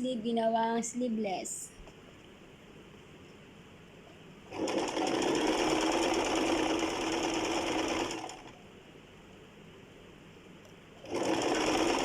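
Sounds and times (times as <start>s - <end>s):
sewing machine stitching: 4.5s - 8.6s, 11.0s - 12.0s.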